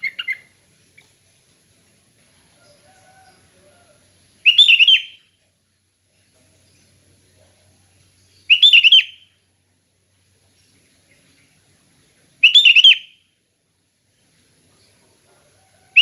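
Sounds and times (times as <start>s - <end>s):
bulbul singing: 0.0s - 1.0s, 4.4s - 5.3s, 8.2s - 9.4s, 12.4s - 13.2s.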